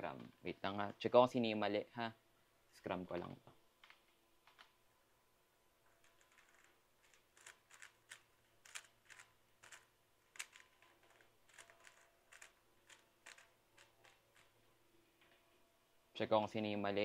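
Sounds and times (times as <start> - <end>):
speed cube plastic clacks: 6.0 - 14.6.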